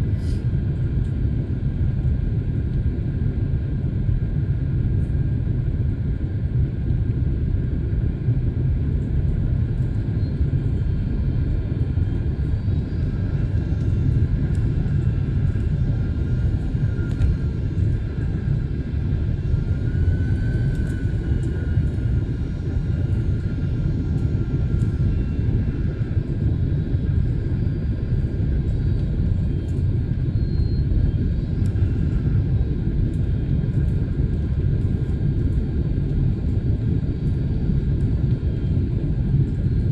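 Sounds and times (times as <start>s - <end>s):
airliner cabin engine rumble: 0.0s - 39.9s
faint whine: 9.0s - 39.9s.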